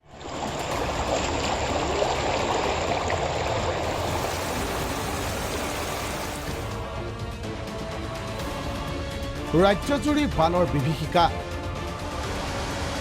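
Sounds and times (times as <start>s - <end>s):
floodwater rushing: 0.1s - 6.9s.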